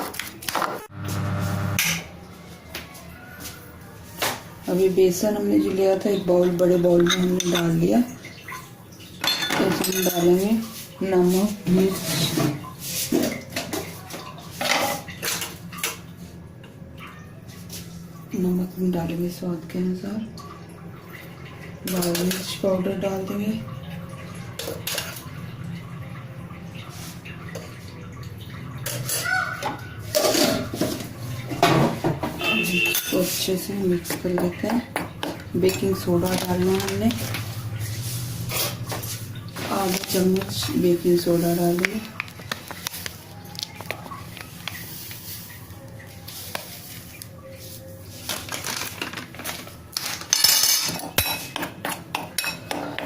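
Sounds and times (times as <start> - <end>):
spoon scraping and clinking in bowl: 6.4 - 7.8, 32.5 - 33.4
person speaking: 35.5 - 37.4, 39.6 - 42.2.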